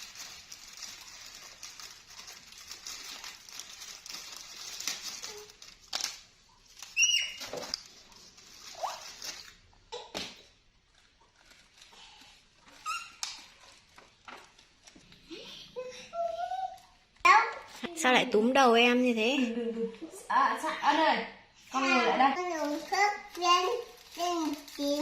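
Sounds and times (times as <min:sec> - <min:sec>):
rustling handling noise: 0:00.0 - 0:09.8, 0:10.5 - 0:15.2, 0:22.3 - 0:25.0
monkey squeaking: 0:07.0 - 0:07.4, 0:12.8 - 0:13.2.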